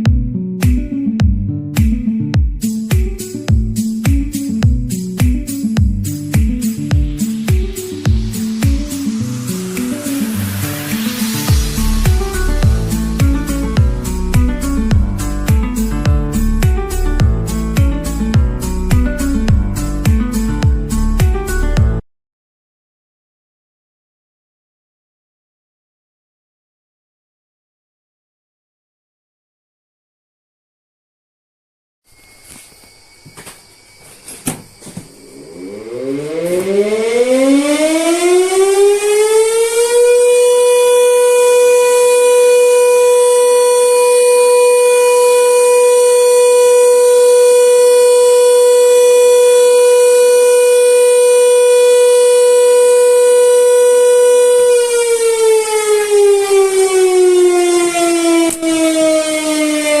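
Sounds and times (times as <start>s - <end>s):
electric motor siren wailing: 7.1s - 17.7s, 34.8s - 60.0s.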